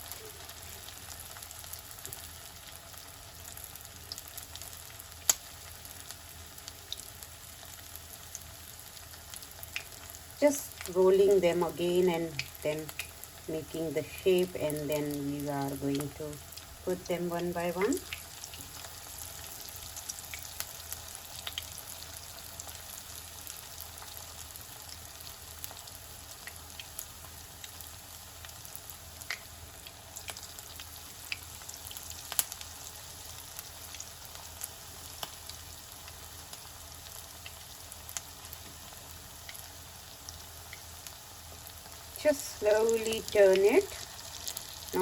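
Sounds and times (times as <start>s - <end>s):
food deep-frying in hot oil: 0.0s - 45.0s
oil popping and crackling: 3.7s - 7.2s, 8.2s - 11.0s, 17.6s - 45.0s.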